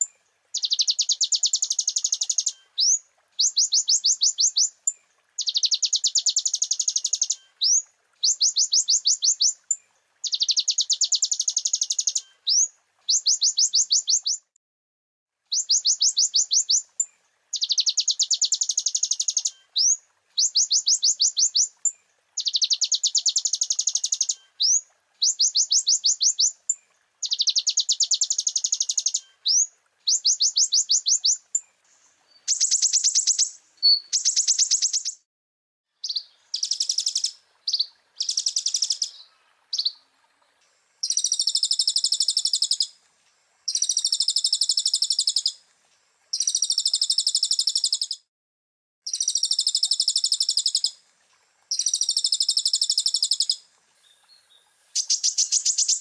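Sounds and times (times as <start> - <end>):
bird singing: 0.0 - 14.5, 15.5 - 35.2, 36.0 - 40.0, 51.7 - 56.0.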